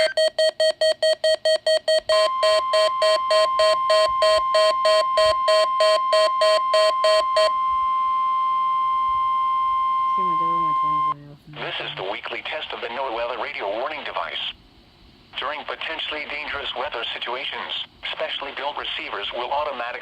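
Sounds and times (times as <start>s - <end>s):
radio alarm beeping: 0.0s - 11.2s
steady warning alarm tone: 0.0s - 11.2s.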